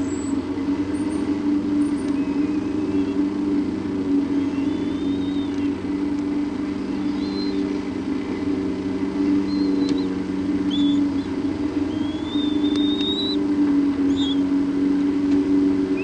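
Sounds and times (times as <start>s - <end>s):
low mechanical hum: 0.0s - 16.0s
high whistled chirps: 4.4s - 5.7s, 6.9s - 7.9s, 9.3s - 14.6s.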